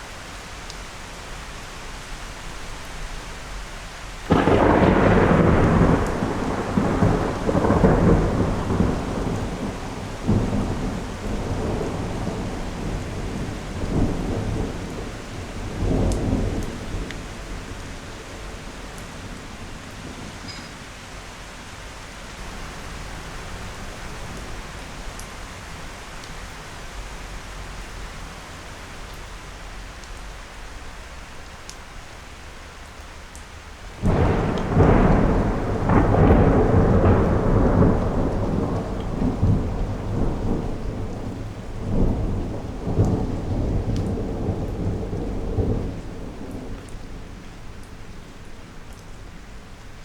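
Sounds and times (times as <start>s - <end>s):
steady rain: 0.0s - 50.0s
thunderclap and rumble: 4.3s - 20.6s, 34.0s - 48.2s.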